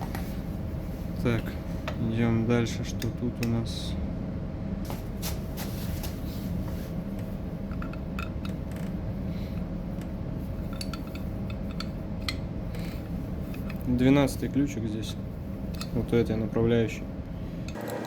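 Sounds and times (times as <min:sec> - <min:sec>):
low background hum: 0:00.0 - 0:18.0
metal parts clicking and rubbing: 0:10.6 - 0:13.9.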